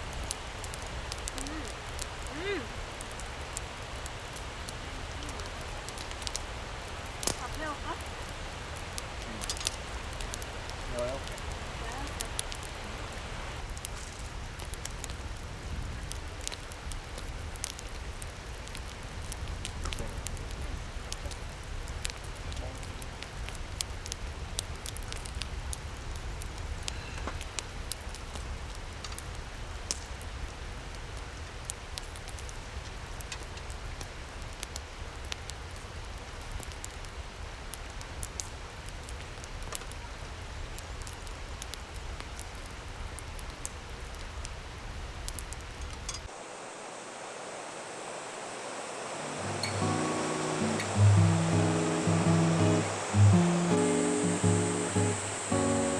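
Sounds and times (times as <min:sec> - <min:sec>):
stream rushing: 0:00.0 - 0:13.7, 0:46.2 - 0:55.9
sharp little pops and ticks: 0:00.1 - 0:12.7, 0:26.8 - 0:30.3, 0:49.5 - 0:55.9.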